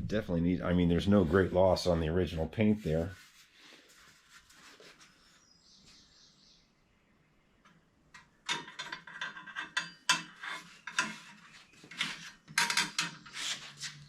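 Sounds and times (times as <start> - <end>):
metal fender clanking and rattling: 8.5 - 10.4.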